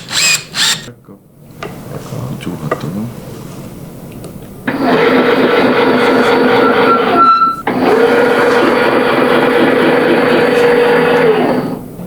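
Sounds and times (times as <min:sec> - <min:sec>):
electric motor whining: 0:00.0 - 0:00.9.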